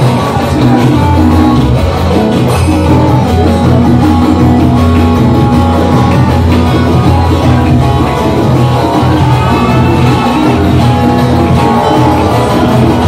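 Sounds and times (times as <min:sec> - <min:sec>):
plucked string instrument music: 0:00.0 - 0:13.0.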